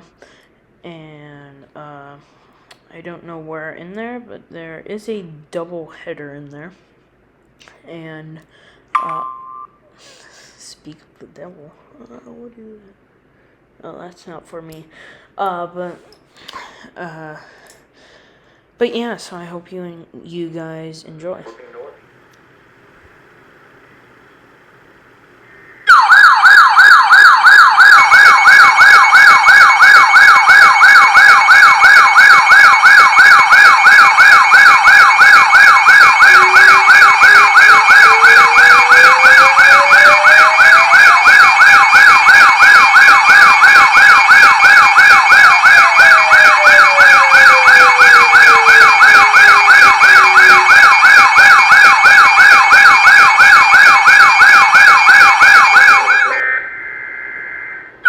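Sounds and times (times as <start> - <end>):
warbling siren tone: 25.4 - 58.0
faint rising and falling tone: 55.7 - 58.0
steady high-pitched tone: 56.0 - 58.0.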